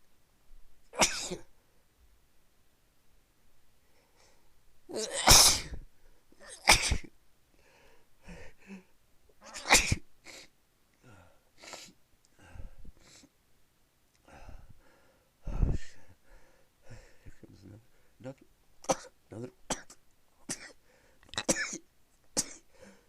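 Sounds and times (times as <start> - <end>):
short breaths: 3.8 - 4.5, 7.5 - 8.9, 10.3 - 13.3, 14.2 - 18.2, 20.8 - 21.4, 22.7 - 23.0
person sneezing: 5.0 - 5.8, 6.4 - 7.1, 9.4 - 10.5, 18.8 - 20.8, 22.4 - 22.7.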